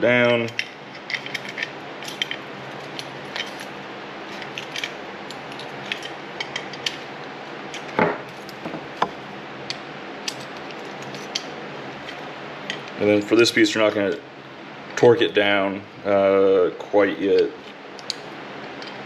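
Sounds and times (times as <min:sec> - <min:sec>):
small metal parts clinking: 0:00.4 - 0:03.7, 0:04.3 - 0:07.0.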